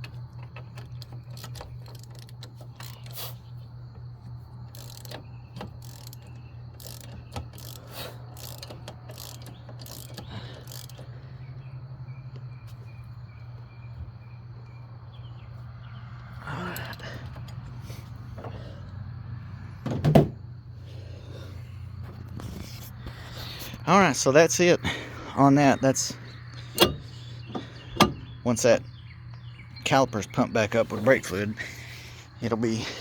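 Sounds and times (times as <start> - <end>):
steady low hum: 0.0 - 33.0
ratchet wrench clicking: 0.8 - 3.4, 4.7 - 11.1
tools clinking: 26.7 - 28.3.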